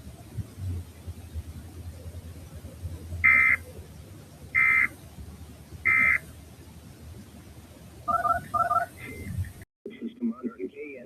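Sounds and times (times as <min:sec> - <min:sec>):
radio hum and hiss: 0:00.0 - 0:11.0
two-tone digital screeches: 0:05.9 - 0:06.2.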